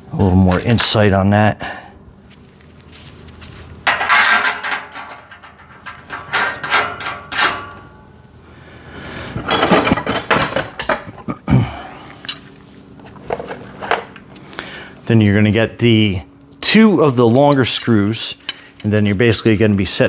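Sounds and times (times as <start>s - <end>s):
metal parts clinking: 3.8s - 8.0s, 9.5s - 11.1s.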